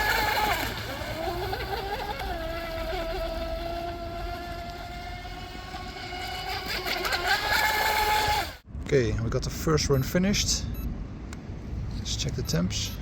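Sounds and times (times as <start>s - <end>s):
electric boat motor whining: 0.0s - 8.7s.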